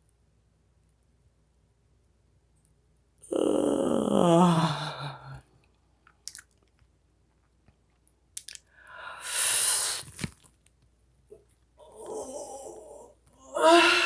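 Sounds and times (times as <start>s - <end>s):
woman yawning: 3.3s - 5.4s, 11.9s - 14.0s.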